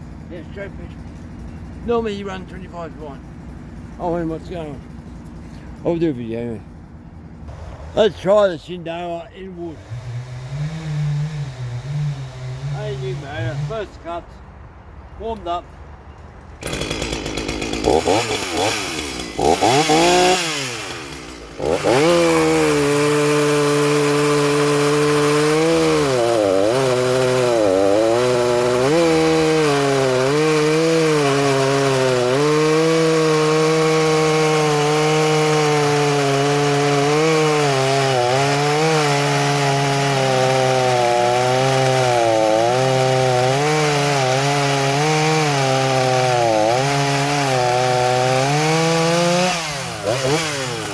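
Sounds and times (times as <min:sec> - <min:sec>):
chainsaw cutting into a log: 0:09.8 - 0:13.9, 0:16.6 - 0:50.9.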